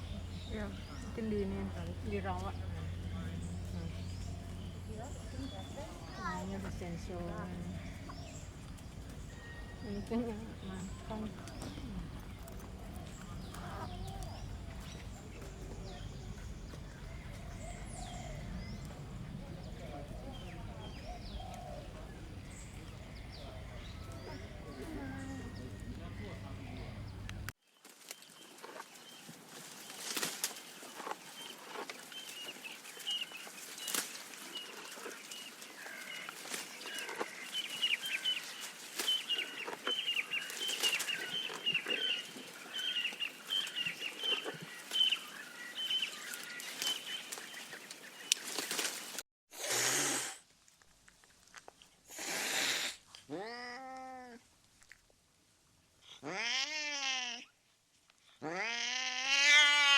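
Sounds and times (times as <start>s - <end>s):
fowl peeping and clucking: 0.0s - 27.5s, 33.9s - 48.9s.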